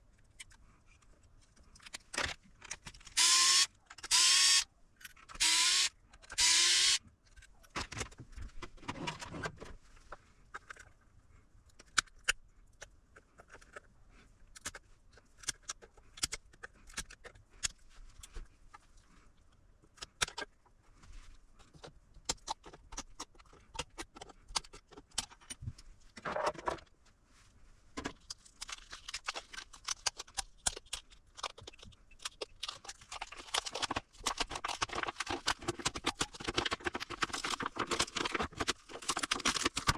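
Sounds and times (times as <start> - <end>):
small power tool whirring: 3.1 - 4.6, 5.3 - 7.0.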